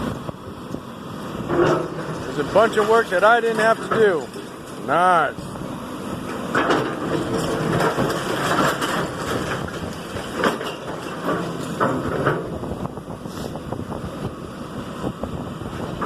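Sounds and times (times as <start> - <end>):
diesel engine running: 0.0 - 16.0
wood and debris breaking: 1.5 - 4.8, 6.3 - 12.5.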